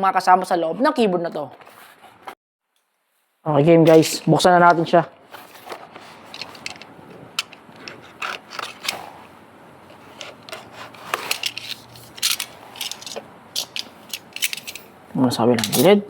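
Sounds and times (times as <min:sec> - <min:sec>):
box rustling and scraping: 0:05.3 - 0:14.9.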